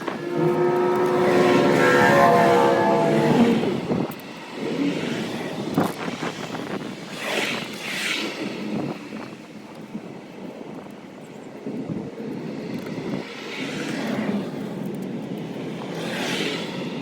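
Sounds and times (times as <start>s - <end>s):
motor vehicle passing by: 0.0s - 4.1s.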